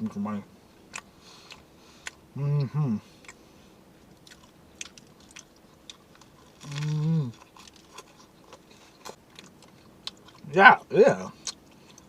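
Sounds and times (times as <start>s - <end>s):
person chewing food: 0.8s - 3.4s, 4.0s - 10.4s, 11.3s - 12.0s
person humming: 6.7s - 7.3s.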